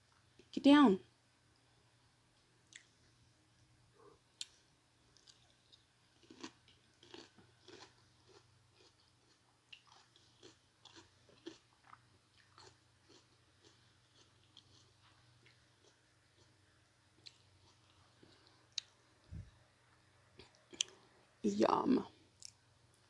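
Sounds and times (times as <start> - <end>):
chewing and biting food: 5.2 - 16.6, 17.2 - 18.9.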